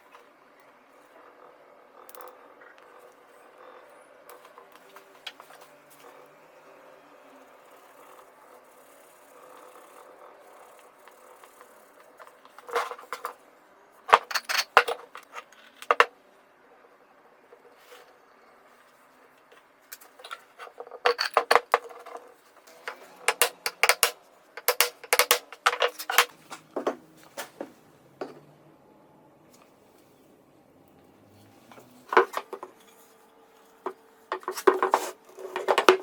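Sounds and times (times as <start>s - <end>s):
metallic clinks and knocks: 14.1s - 16.1s, 19.5s - 27.0s.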